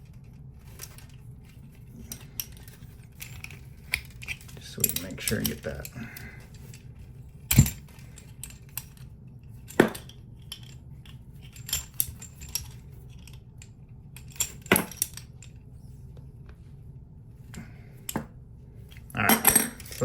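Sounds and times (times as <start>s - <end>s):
wrench clanking on metal fitting: 3.9s - 6.4s, 19.2s - 20.0s.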